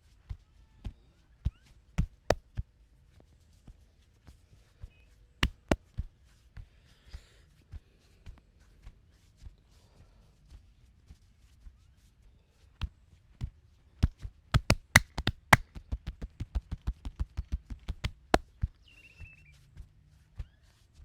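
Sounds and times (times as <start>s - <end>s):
hands slapping in massage: 5.4s - 5.8s, 14.0s - 18.5s.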